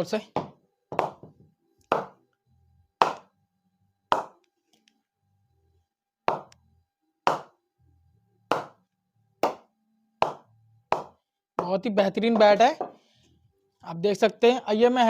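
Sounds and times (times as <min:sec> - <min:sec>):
ball knocking on wooden bat: 0:00.4 - 0:02.2, 0:03.0 - 0:03.3, 0:04.1 - 0:04.4, 0:06.3 - 0:06.6, 0:07.3 - 0:07.5, 0:08.5 - 0:08.8, 0:09.4 - 0:13.0.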